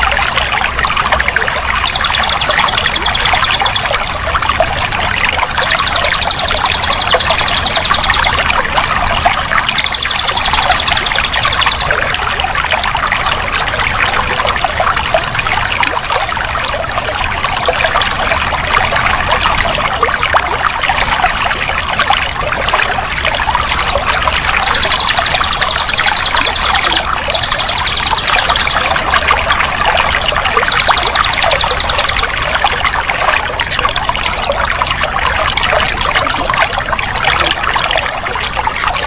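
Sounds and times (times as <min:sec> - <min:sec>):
water trickling and splashing: 0:00.0 - 0:39.0
high rapid trill: 0:01.8 - 0:04.0, 0:05.5 - 0:08.5, 0:09.6 - 0:12.0, 0:24.6 - 0:29.3, 0:30.6 - 0:32.4.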